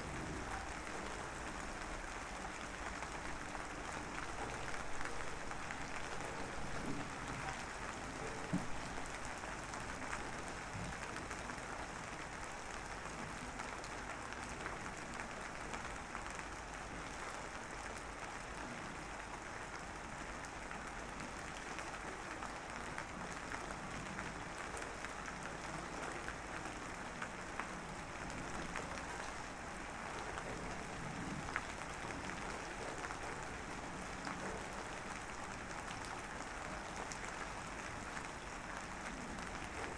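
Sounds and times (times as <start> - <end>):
drizzling rain patter: 0.0 - 39.9.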